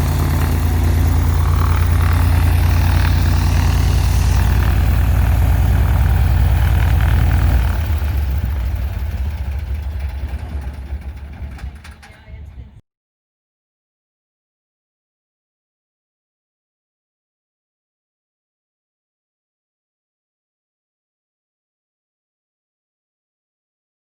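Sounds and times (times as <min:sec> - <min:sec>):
piston aircraft engine running: 0:00.0 - 0:12.8
propeller winding down: 0:00.0 - 0:12.8.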